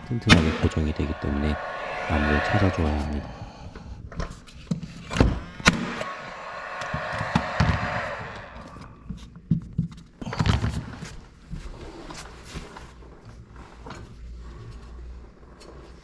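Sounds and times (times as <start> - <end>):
steady pitched tone: 0.0 - 3.8, 5.8 - 9.1.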